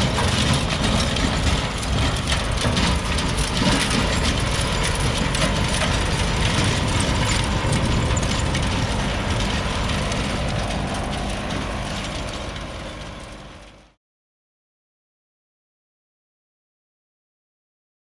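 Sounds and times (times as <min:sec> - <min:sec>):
tiller engine running: 0:00.0 - 0:14.0.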